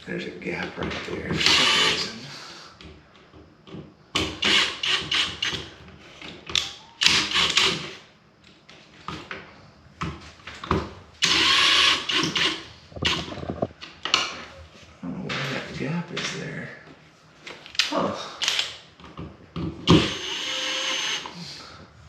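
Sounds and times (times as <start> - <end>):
cordless drill driving screws: 1.3 - 2.2, 4.2 - 5.7, 7.0 - 8.0, 11.2 - 13.3, 19.9 - 21.4
handling noise: 12.9 - 17.7.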